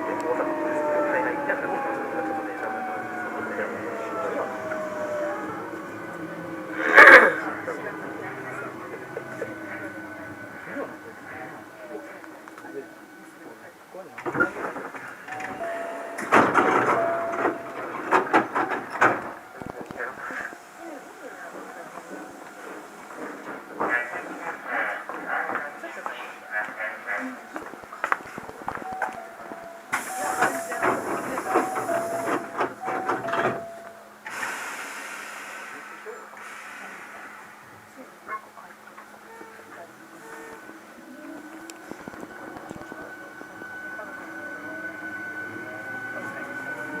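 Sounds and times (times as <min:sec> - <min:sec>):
train car low hum: 0:00.0 - 0:47.0
hissing air: 0:34.2 - 0:37.7.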